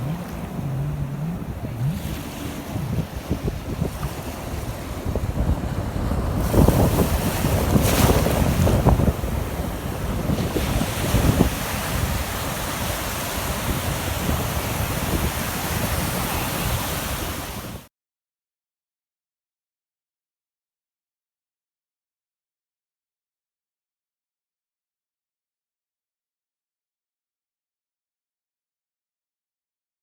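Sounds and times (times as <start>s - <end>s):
wind buffeting microphone: 0.0s - 17.8s
surf washing onto beach: 0.0s - 17.9s.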